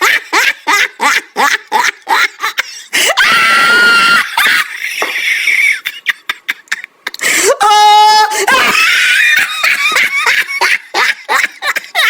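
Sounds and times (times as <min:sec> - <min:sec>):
person laughing: 0:00.0 - 0:07.6, 0:08.3 - 0:12.0
high-pitched scream: 0:03.2 - 0:04.8.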